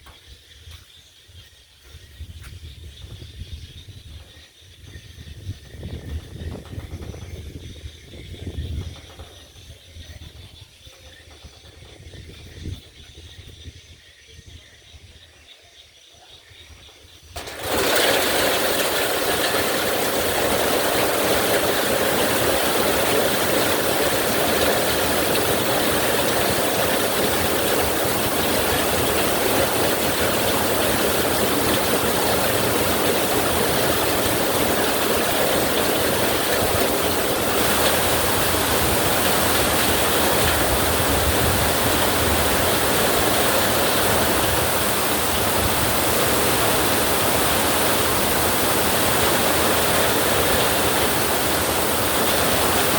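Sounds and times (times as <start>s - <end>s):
heavy rain: 17.4s - 52.9s.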